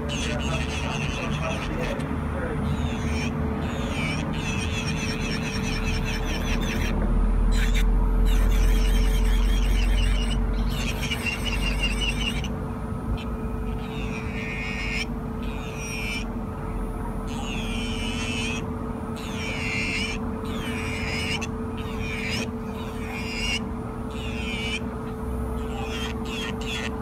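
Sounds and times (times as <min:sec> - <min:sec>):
electric nail drill whining: 0:02.7 - 0:12.5, 0:13.2 - 0:16.3, 0:19.2 - 0:24.8, 0:25.4 - 0:27.0.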